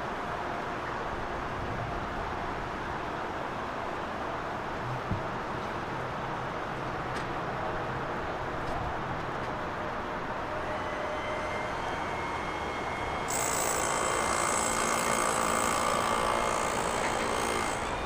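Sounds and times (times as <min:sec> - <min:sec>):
high hissing whine: 0:10.4 - 0:18.0.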